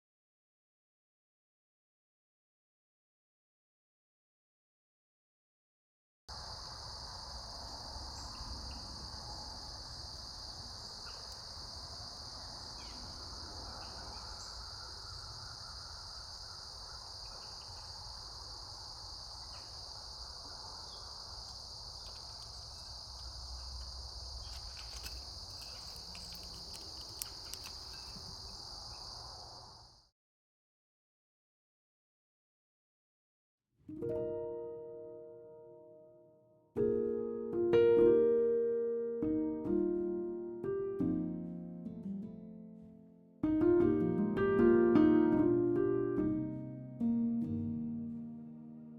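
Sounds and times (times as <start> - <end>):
insect chorus drone: 6.3 - 30.1
sharp clicks: 24.5 - 28.5.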